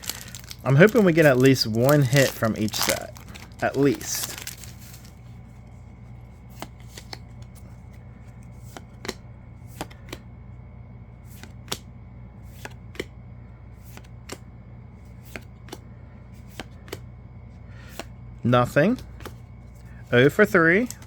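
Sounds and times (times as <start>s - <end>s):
steady low hum: 0.0s - 21.0s
trading cards snapping: 6.5s - 7.5s, 8.5s - 10.3s, 11.3s - 11.9s, 12.5s - 13.2s, 13.8s - 14.5s, 15.1s - 15.8s, 16.4s - 17.1s, 17.8s - 18.2s, 18.8s - 19.4s.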